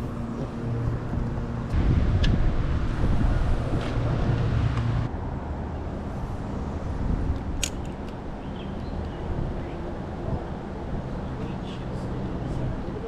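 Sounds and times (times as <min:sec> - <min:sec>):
wind buffeting microphone: 0:00.0 - 0:05.1, 0:05.8 - 0:13.0.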